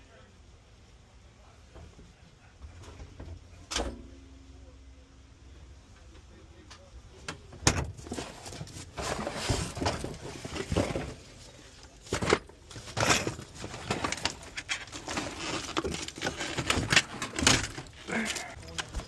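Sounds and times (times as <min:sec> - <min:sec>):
rustling: 0:07.9 - 0:19.0.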